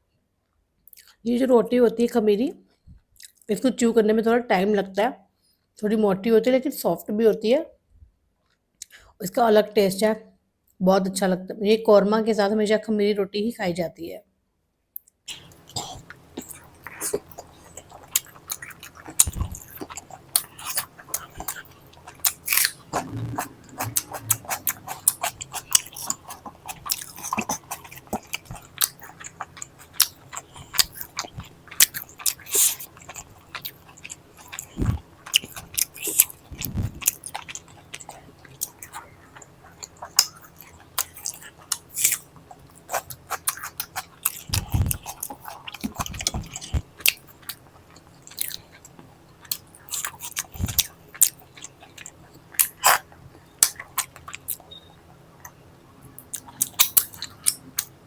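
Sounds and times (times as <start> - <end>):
chewing and biting food: 15.3 - 58.0
low thumps: 22.8 - 25.8.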